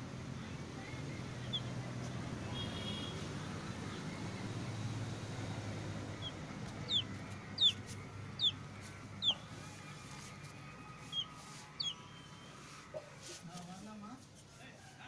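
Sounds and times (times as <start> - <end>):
bird chirping: 1.0 - 1.7, 6.1 - 9.5, 11.0 - 12.5.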